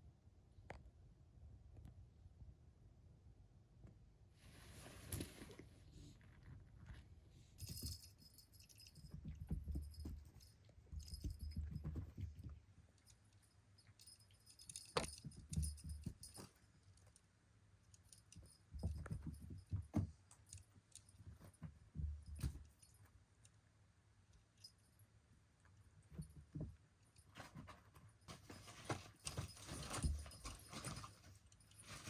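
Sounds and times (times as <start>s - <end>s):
rustling: 4.4s - 9.0s, 27.2s - 32.0s
small metal bell jingling: 7.6s - 17.0s, 27.1s - 32.0s.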